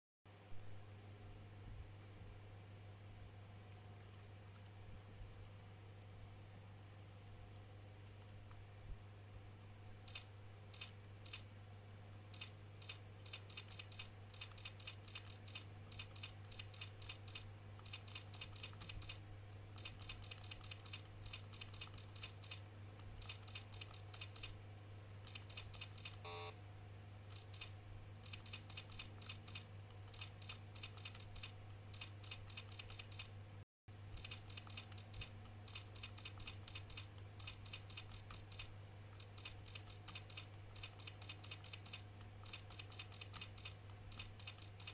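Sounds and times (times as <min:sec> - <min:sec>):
steady low hum: 0:00.3 - 0:44.9
keyboard typing: 0:10.1 - 0:11.5, 0:12.3 - 0:24.6, 0:25.2 - 0:26.5, 0:27.3 - 0:33.3, 0:34.1 - 0:44.9.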